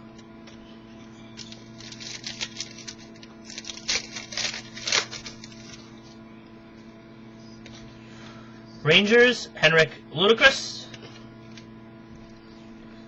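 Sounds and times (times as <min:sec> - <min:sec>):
trading cards shuffled by hand: 0:01.4 - 0:06.2.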